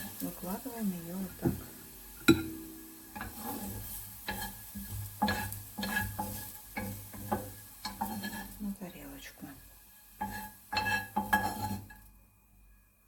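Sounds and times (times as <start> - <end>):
light sizzle: 0.0 - 13.0
utensil scraping a frying pan: 1.4 - 8.6, 10.0 - 12.1.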